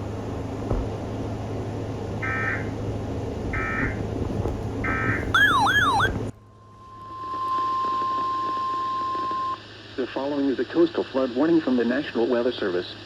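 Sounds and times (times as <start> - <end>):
warbling siren-like tone: 5.3 - 6.3
digital data bursts: 5.4 - 6.1
steady alert tone: 5.4 - 6.1.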